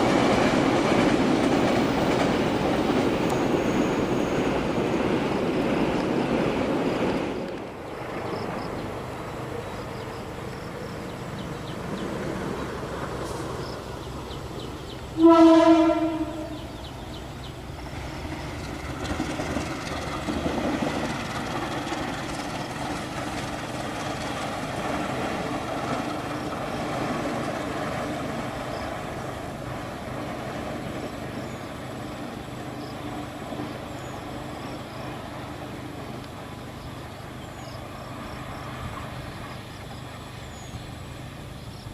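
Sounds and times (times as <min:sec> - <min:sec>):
train wheels rumbling and clattering: 0:00.0 - 0:41.9
train horn blast: 0:15.2 - 0:16.8.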